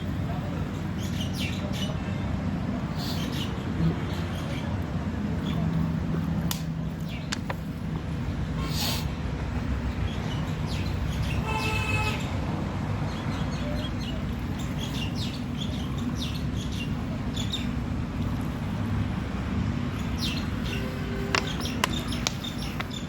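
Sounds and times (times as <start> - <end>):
small birds chirping: 2.9 - 4.8, 6.8 - 7.8, 13.1 - 17.8, 19.9 - 23.0.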